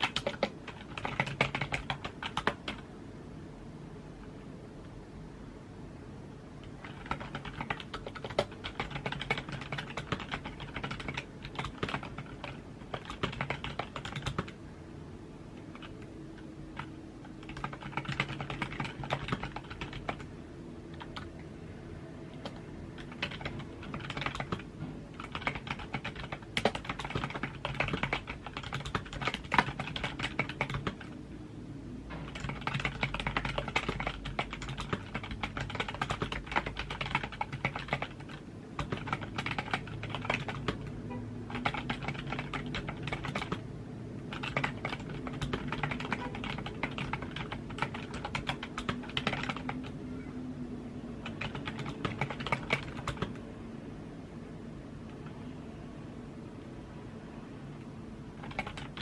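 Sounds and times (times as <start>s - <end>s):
typing on keyboard: 0.0s - 2.9s, 6.6s - 14.6s, 15.6s - 20.3s, 20.9s - 21.5s, 22.3s - 31.2s, 32.1s - 50.0s, 51.2s - 53.5s, 58.4s - 59.0s
faint low hum: 0.0s - 59.0s.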